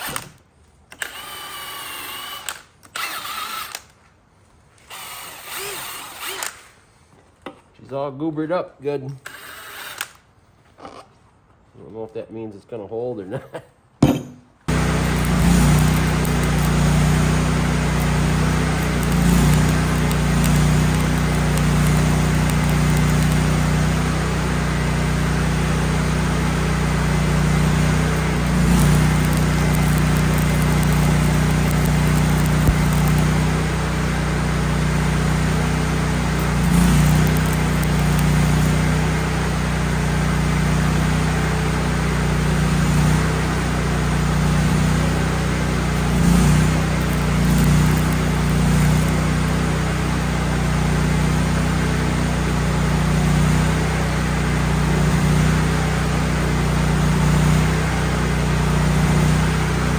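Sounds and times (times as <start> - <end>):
welder gas engine running: 14.7 - 59.9.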